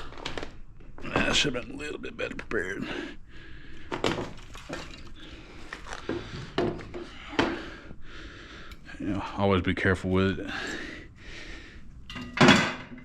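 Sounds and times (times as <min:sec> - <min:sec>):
metal tools knocking and clinking: 0:12.1 - 0:13.0.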